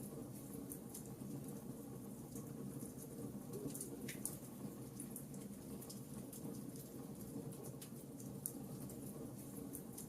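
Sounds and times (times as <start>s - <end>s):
low rumble of burning: 0.0s - 10.0s.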